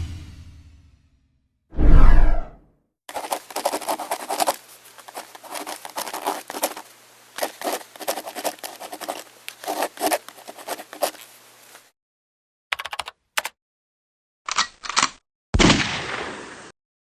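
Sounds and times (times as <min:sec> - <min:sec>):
scratchy scrapes: 0:03.1 - 0:11.9.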